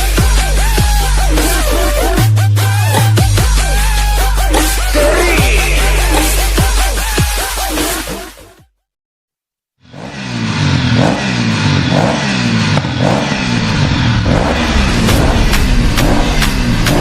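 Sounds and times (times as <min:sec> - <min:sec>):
instrumental ringtone with bass line: 0:02.9 - 0:07.8.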